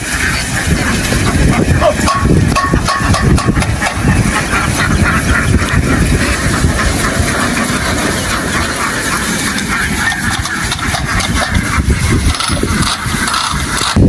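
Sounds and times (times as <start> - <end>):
engine running steadily: 0.0 - 14.0
flock of ducks quacking: 0.0 - 14.0.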